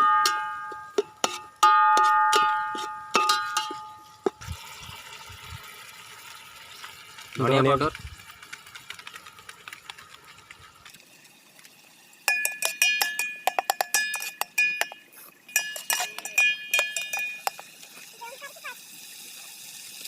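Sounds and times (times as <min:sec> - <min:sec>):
metal spoon knocking on pan: 0:00.0 - 0:04.4, 0:12.3 - 0:17.6.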